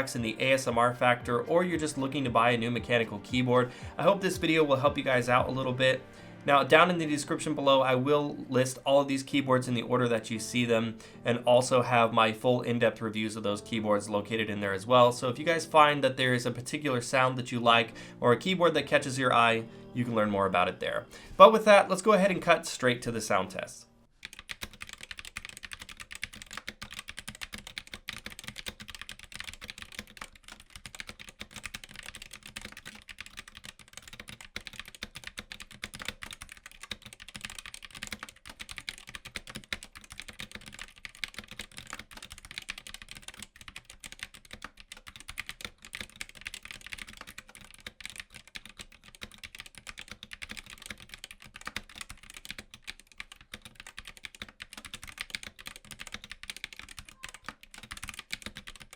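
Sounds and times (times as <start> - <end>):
fast typing on mechanical keyboard: 24.2 - 58.9.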